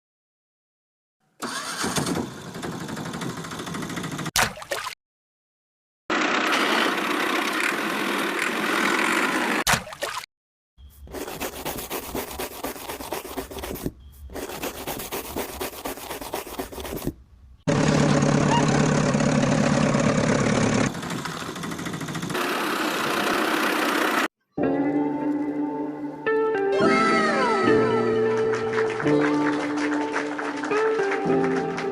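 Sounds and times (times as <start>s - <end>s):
toy tractor motor whirring: 1.4s - 4.1s, 6.1s - 9.6s.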